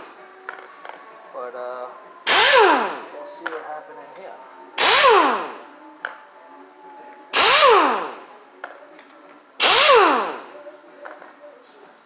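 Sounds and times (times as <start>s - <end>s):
power drill motor whirring: 2.3s - 3.1s, 4.8s - 5.6s, 7.4s - 8.2s, 9.6s - 10.5s.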